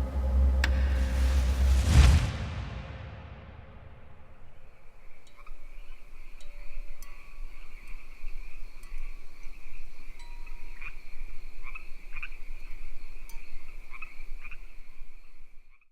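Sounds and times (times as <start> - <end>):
frogs croaking: 4.8 - 15.9
frogs and insects trilling: 5.1 - 15.9.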